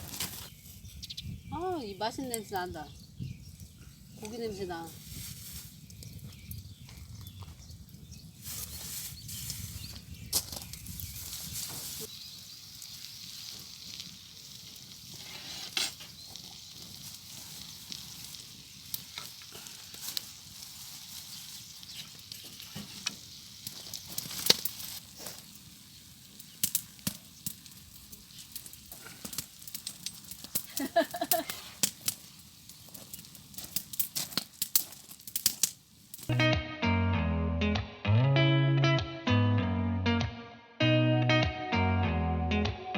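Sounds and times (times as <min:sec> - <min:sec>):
meat sizzling on a grill plate: 0:11.7 - 0:36.3.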